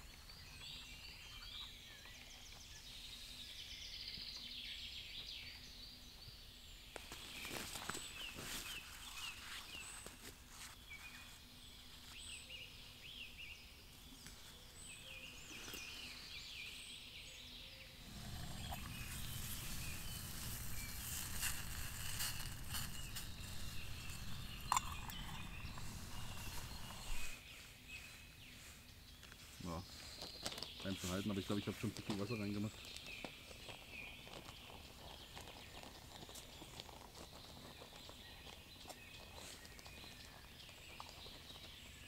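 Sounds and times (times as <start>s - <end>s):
birds chirping and trilling: 0.0s - 10.1s, 10.8s - 42.0s
low rushing noise: 18.0s - 27.4s.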